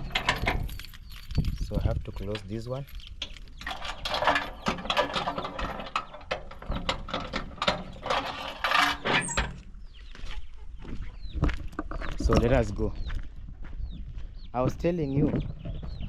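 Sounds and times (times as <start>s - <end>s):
door shutting: 8.8s - 9.6s.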